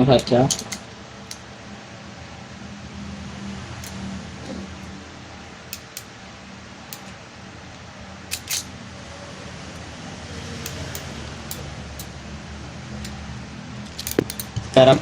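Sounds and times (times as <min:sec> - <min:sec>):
cutting tool snipping wires: 0:00.1 - 0:01.4, 0:05.7 - 0:06.1, 0:08.3 - 0:08.7, 0:10.6 - 0:12.2, 0:13.8 - 0:14.6.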